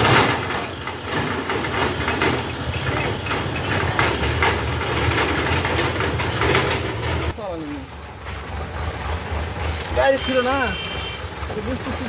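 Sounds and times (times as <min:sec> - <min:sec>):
metallic clicks and knocks: 0:00.0 - 0:07.4
diesel engine running: 0:00.0 - 0:12.0.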